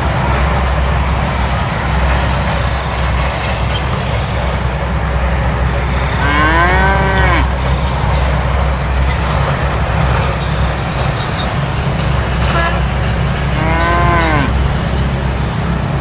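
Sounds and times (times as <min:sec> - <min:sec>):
cow mooing: 0:06.1 - 0:07.6, 0:13.5 - 0:14.6.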